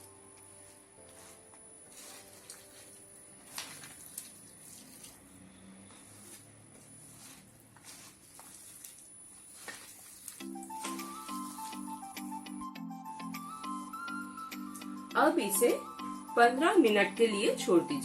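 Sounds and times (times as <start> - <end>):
soft rustles of mixing by hand: 0.0 - 12.6.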